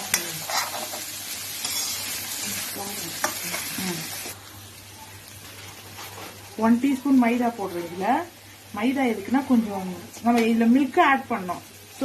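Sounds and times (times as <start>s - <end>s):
spatula stirring food: 0.0s - 4.4s
food sizzling in a frying pan: 0.0s - 12.0s.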